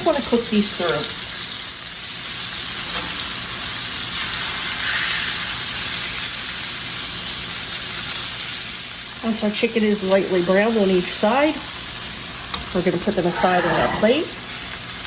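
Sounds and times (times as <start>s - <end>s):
chicken sizzling in a pan: 0.0s - 15.0s.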